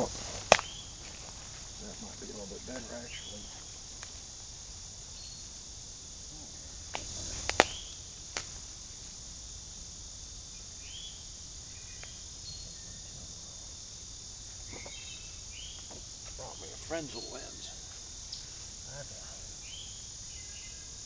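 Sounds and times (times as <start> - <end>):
high-pitched insect chorus: 0.0 - 21.0.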